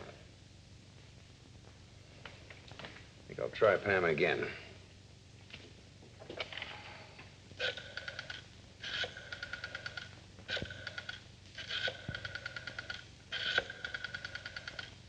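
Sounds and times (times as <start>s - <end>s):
dial whirring back: 7.6s - 14.9s
rotary phone dial clicking: 7.6s - 15.0s.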